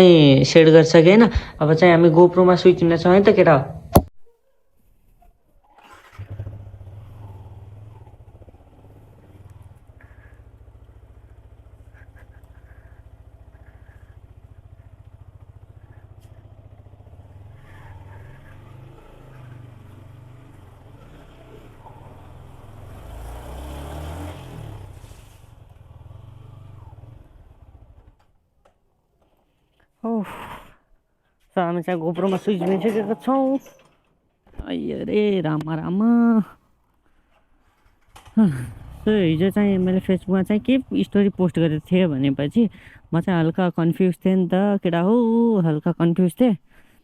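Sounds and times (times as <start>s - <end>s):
motorcycle engine idling: 5.9s - 29.3s, 36.9s - 45.7s.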